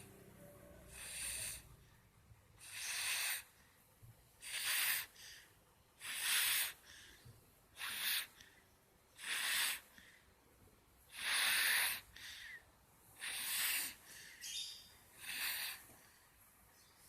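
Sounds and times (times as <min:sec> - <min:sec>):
quiet breathing: 0:00.0 - 0:17.0.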